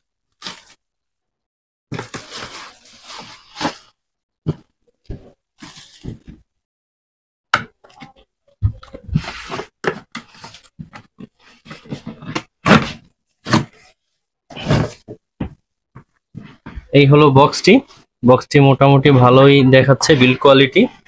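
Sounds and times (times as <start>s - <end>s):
plastic wrapping rustling: 1.9s - 4.0s.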